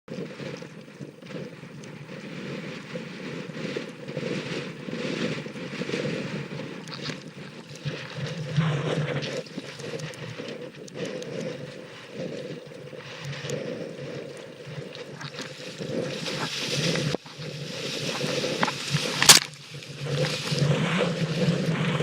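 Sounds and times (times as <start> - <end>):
wind rushing over microphone: 0.1 - 22.0
water rushing and splashing: 13.0 - 22.0.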